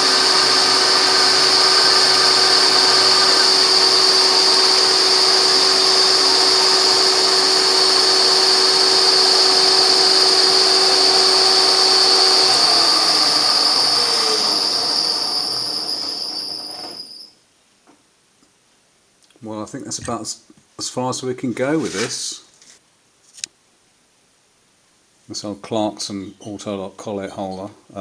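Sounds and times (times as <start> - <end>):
milling machine cutting metal: 0.0 - 17.2
spindle winding down: 0.0 - 17.3.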